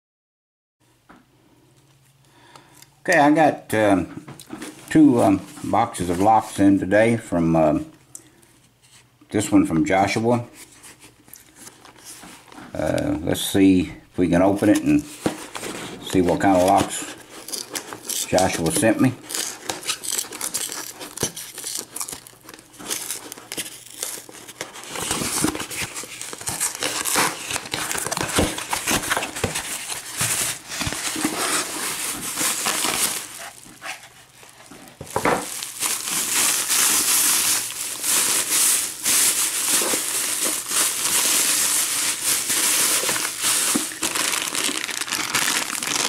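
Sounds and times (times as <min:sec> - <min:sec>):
packing material crinkling: 0:14.5 - 0:46.0.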